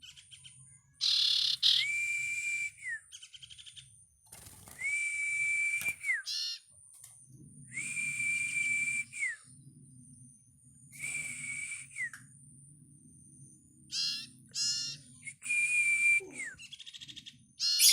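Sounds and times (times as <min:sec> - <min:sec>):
bird chirps: 0:00.0 - 0:01.9, 0:06.3 - 0:06.6, 0:13.9 - 0:15.2, 0:16.2 - 0:17.9
bird whistles: 0:01.0 - 0:03.4, 0:04.6 - 0:06.6, 0:13.9 - 0:17.9.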